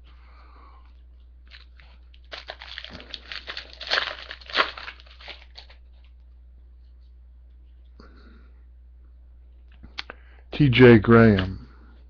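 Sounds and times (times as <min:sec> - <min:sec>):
foil wrapper tearing and crinkling: 0:01.5 - 0:05.8.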